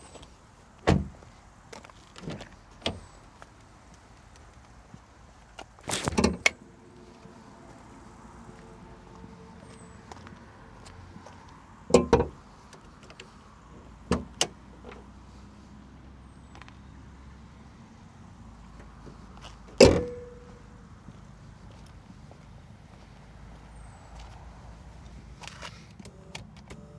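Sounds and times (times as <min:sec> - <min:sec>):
car cabin parts clacking: 0:00.8 - 0:03.2, 0:05.9 - 0:06.6, 0:11.9 - 0:13.3, 0:14.0 - 0:15.1, 0:19.7 - 0:20.5.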